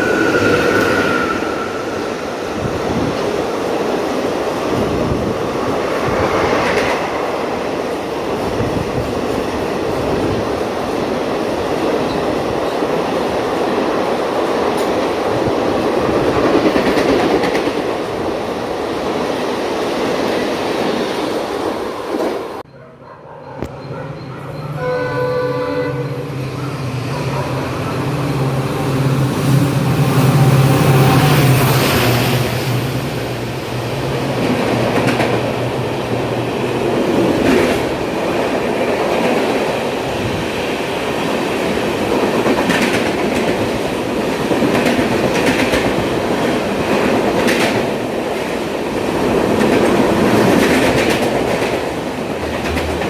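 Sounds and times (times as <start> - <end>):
train wheels rumbling on rail: 0.0 - 22.6, 26.2 - 53.0
wheels clacking on rail joints: 41.1 - 53.0.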